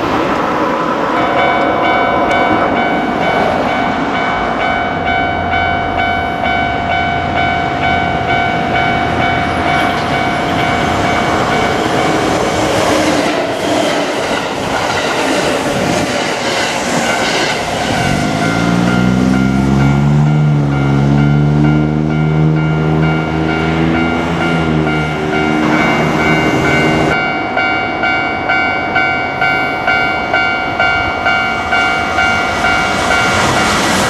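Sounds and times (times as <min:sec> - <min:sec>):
level-crossing warning bell: 0:01.0 - 0:15.2, 0:16.8 - 0:34.0
train wheels clattering: 0:09.0 - 0:19.5.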